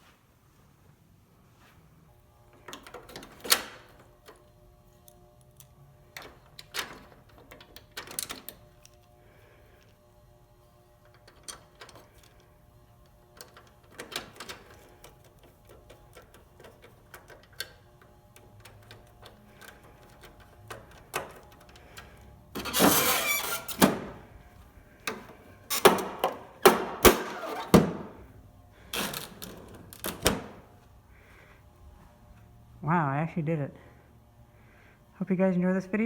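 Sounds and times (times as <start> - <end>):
printer whirring and clattering: 11.0 - 24.3.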